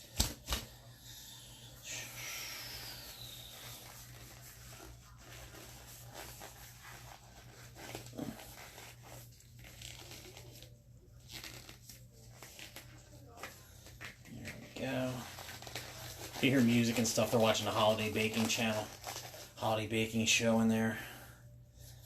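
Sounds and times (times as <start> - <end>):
low electrical hum: 0.0 - 22.0
rustling and crinkling handling: 3.1 - 20.9.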